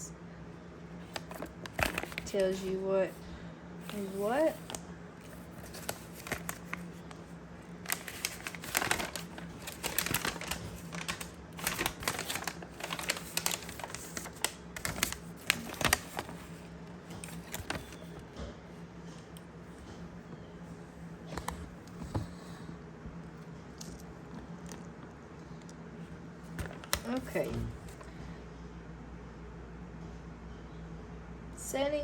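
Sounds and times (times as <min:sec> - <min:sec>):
clicks taps and rustles of handling: 0:26.5 - 0:28.1.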